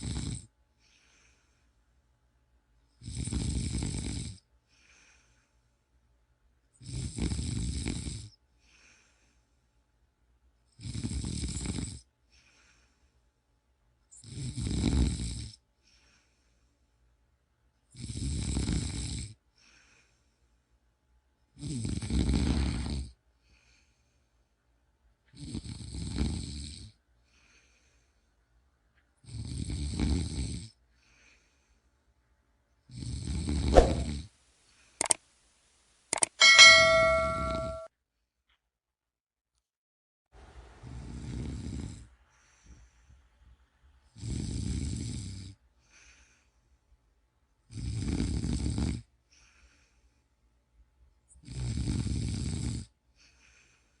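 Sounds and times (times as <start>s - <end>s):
person snoring: 0.0s - 0.4s, 3.0s - 4.4s.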